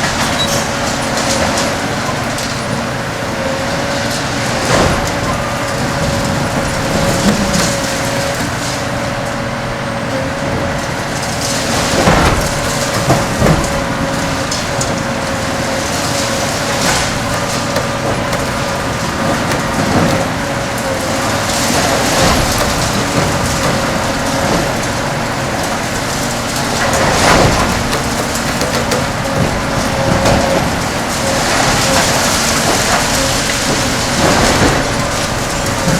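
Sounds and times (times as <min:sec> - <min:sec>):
diesel engine under load: 0:00.0 - 0:35.9
debris crackling and falling: 0:03.6 - 0:09.7, 0:10.4 - 0:35.9
heavy rubble crashes: 0:03.7 - 0:35.9.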